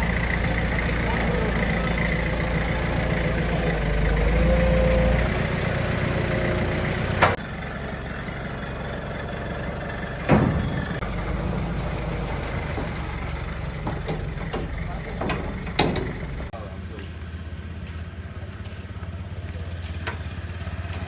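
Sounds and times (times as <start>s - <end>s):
heavy vehicle engine idling: 0.0s - 21.0s
loud knocks: 10.2s - 11.1s.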